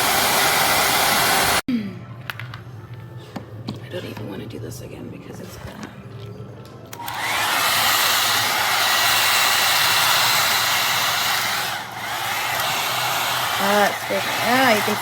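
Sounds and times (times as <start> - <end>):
hot air brush blowing: 0.0 - 1.6, 7.0 - 15.0.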